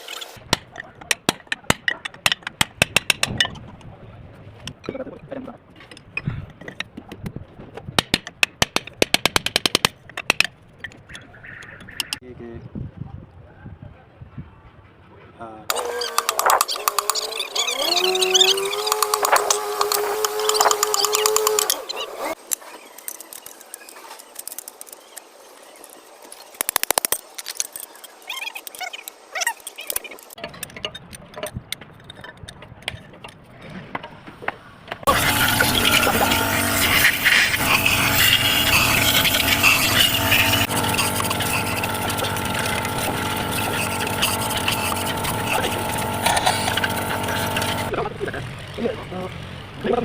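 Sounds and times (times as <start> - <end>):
sharp knocks or clicks: 0.4 - 3.6, 6.9 - 10.6, 18.8 - 21.8
hand tools clicking and tapping: 0.4 - 3.9, 5.8 - 12.2, 15.7 - 28.0.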